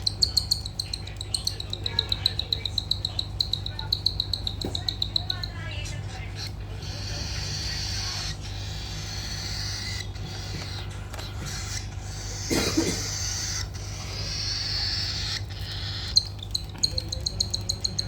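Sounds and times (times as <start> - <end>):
high bird chirps: 0.0 - 18.0
cockatiel raspy begging call: 6.4 - 16.3.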